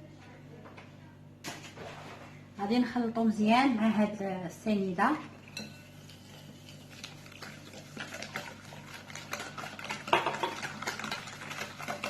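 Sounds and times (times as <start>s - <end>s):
utensil beating in a bowl: 5.4s - 12.0s.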